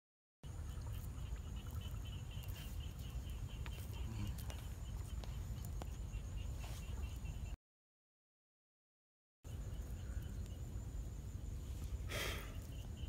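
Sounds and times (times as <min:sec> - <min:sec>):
small animal chirping: 0:00.6 - 0:07.4.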